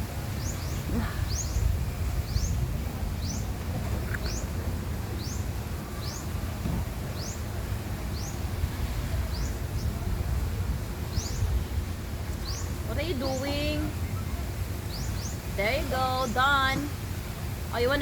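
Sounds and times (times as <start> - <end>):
steady low rumble: 0.0 - 18.0
bird chirping: 8.1 - 8.4, 12.4 - 14.2, 14.9 - 15.5.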